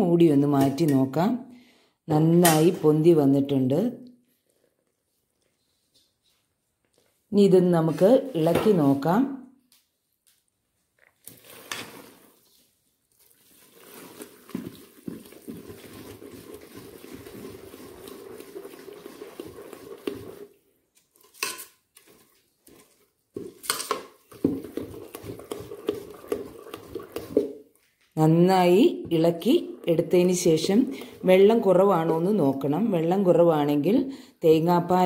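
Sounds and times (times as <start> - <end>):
spoon stirring thick batter: 4.3 - 7.2, 10.7 - 34.0.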